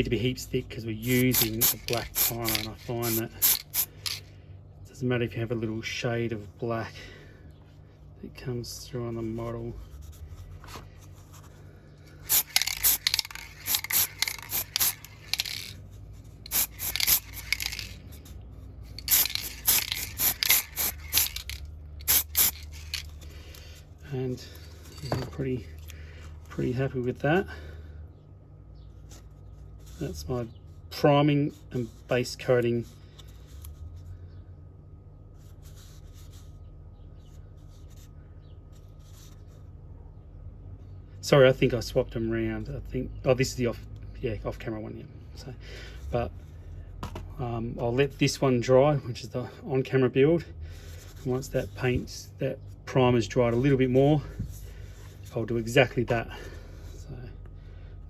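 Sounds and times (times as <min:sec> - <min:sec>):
low steady hum: 0:00.0 - 0:58.0
spray can hissing bursts: 0:01.0 - 0:04.2, 0:12.3 - 0:15.7, 0:16.5 - 0:18.0, 0:19.0 - 0:23.0
light scrapes and clicks of models: 0:01.1 - 0:04.3, 0:09.1 - 0:23.8, 0:31.6 - 0:33.9.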